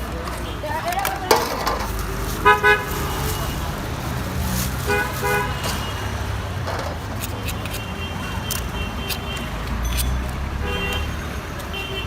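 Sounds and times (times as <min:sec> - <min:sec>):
low traffic rumble: 0:00.0 - 0:12.0
vehicle horns honking: 0:02.4 - 0:03.8, 0:04.8 - 0:06.4, 0:07.4 - 0:12.0.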